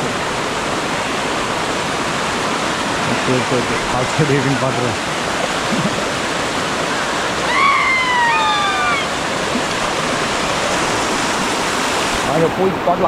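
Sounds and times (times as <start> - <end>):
waterfall rushing: 0.0 - 13.0
high downward gliding call: 7.4 - 9.2.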